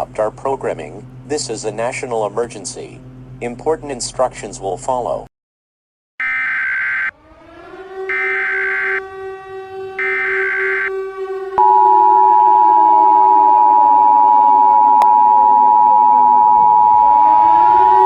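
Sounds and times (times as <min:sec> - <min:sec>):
siren: 0:06.2 - 0:18.0
two-tone attention signal: 0:10.0 - 0:11.0, 0:11.6 - 0:18.0.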